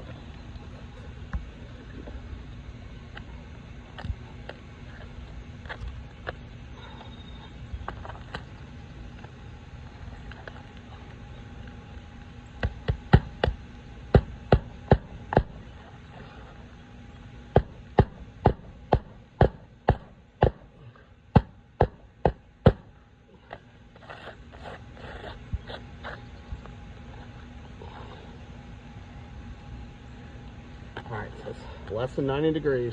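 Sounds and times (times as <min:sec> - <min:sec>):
hammer striking roofing nails: 0:17.6 - 0:20.6.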